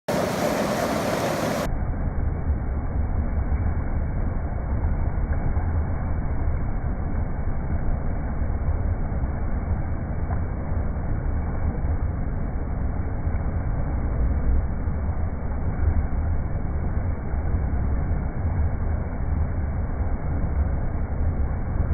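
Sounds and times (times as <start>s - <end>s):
river water rushing: 0.1s - 1.7s.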